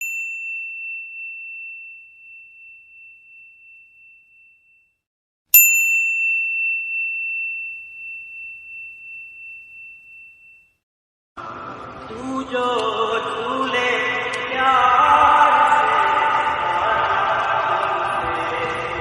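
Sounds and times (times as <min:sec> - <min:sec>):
small high-pitched bell ringing: 0:00.0 - 0:10.8.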